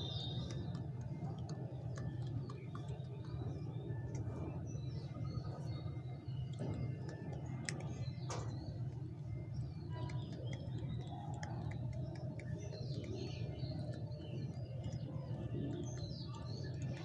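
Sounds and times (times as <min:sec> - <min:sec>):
birds chirping: 0:00.0 - 0:17.0
steady low hum: 0:00.0 - 0:17.0
small clicks: 0:06.4 - 0:08.8.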